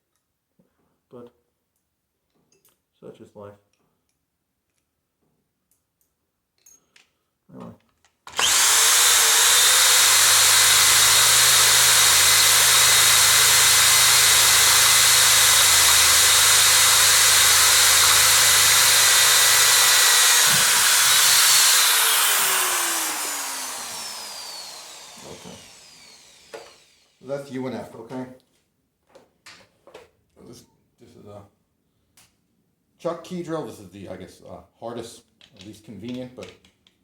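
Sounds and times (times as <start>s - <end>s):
electric drill running: 8.3s - 27.2s.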